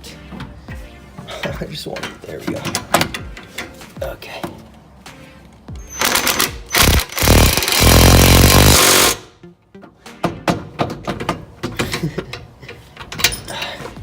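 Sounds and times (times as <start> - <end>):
impact wrench hammering: 5.8 - 9.2.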